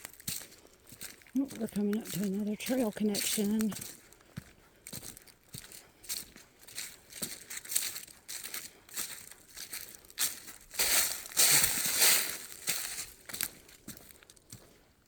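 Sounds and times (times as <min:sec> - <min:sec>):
footsteps crunching dry leaves: 0:00.0 - 0:14.8
scuffing and rustling: 0:04.9 - 0:14.7.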